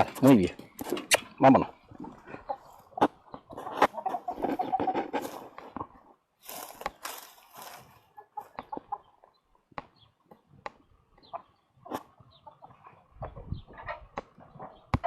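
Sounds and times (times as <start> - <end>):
hens clucking: 0.0 - 15.0
rustling: 6.4 - 8.0.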